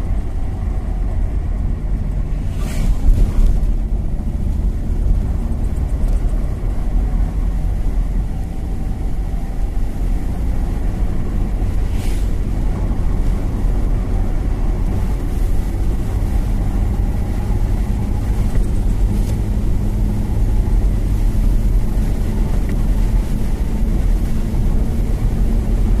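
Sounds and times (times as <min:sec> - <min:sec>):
vehicle engine rumbling: 0:00.0 - 0:26.0
faint hiss: 0:11.6 - 0:12.6.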